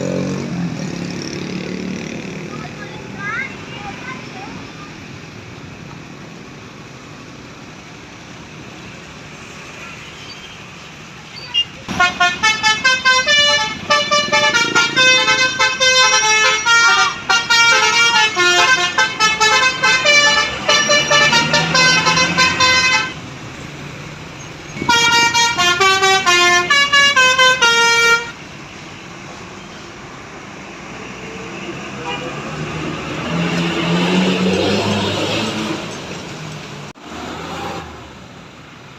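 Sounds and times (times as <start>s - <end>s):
low traffic rumble: 0.0s - 38.9s
bus musical horn: 11.5s - 23.2s, 24.8s - 28.4s, 31.9s - 32.5s.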